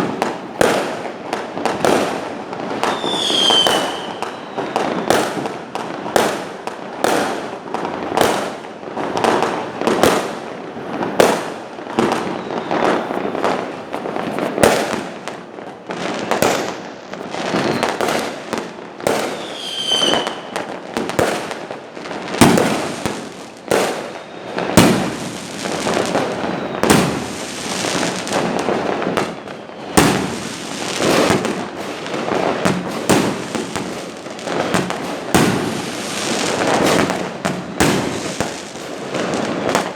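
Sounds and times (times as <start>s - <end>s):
fireworks bangs: 0.0s - 39.9s
high whistle: 2.9s - 5.1s, 12.2s - 13.1s, 19.3s - 20.6s, 24.0s - 24.7s.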